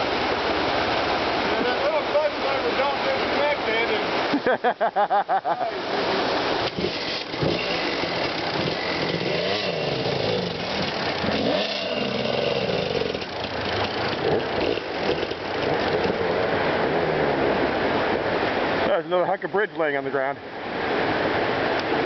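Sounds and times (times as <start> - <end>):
dirt bike engine revving: 6.5 - 17.8.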